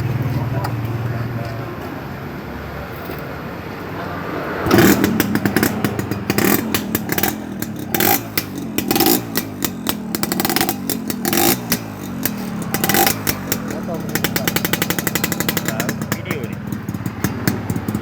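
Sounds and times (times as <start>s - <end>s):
motorcycle engine revving: 0.0s - 2.2s, 3.7s - 18.0s
sharp exhaust cracks: 4.6s - 18.0s.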